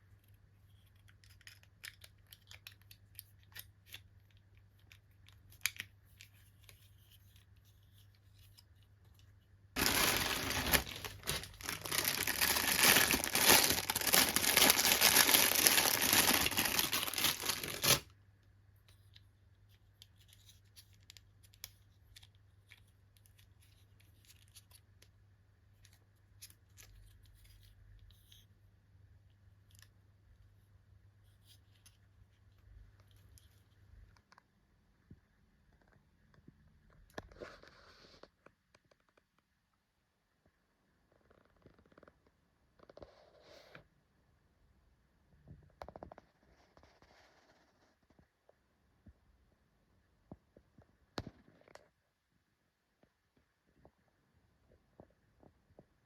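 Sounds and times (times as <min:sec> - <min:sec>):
packaging clicks: 0:09.8 - 0:18.0
packaging rustling: 0:09.8 - 0:18.1
packaging tearing and crinkling: 0:09.8 - 0:18.1.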